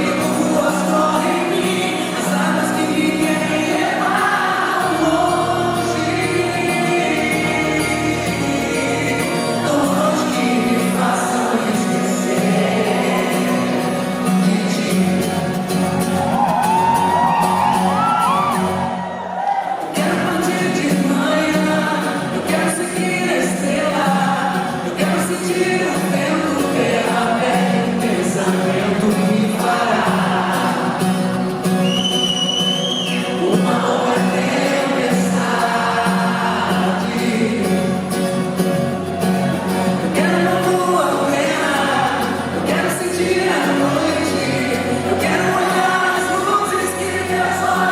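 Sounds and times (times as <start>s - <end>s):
person singing: 0.0s - 18.8s, 19.7s - 31.6s, 32.8s - 38.6s, 39.4s - 47.9s
live band playing pop song: 0.0s - 47.9s.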